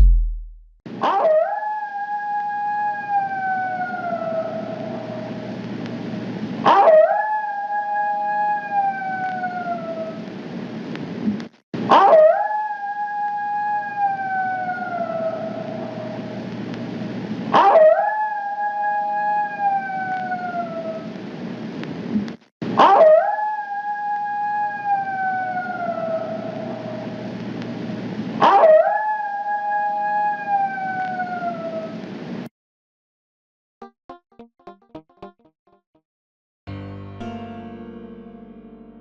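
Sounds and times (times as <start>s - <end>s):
coyote howling: 1.0s - 5.4s, 6.6s - 10.2s, 11.9s - 16.4s, 17.5s - 21.1s, 22.8s - 27.3s, 28.4s - 32.0s.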